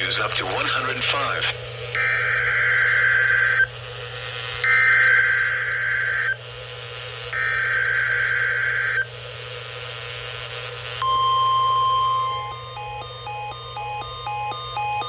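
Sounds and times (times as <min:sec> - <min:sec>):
steady weather radio alert tone: 0:00.0 - 0:03.7, 0:04.6 - 0:06.4, 0:11.0 - 0:15.0
harsh warbling data bursts: 0:00.0 - 0:06.4.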